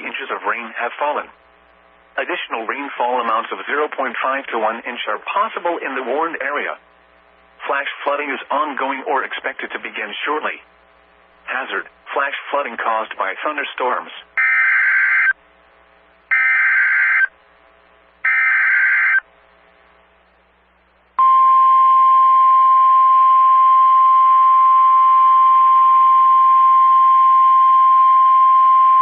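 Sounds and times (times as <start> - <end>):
emergency alert data bursts: 14.4 - 15.4, 16.3 - 17.3, 18.2 - 19.3
single-tone warning alarm: 14.4 - 15.4, 16.3 - 17.3, 18.2 - 19.2, 21.2 - 29.0.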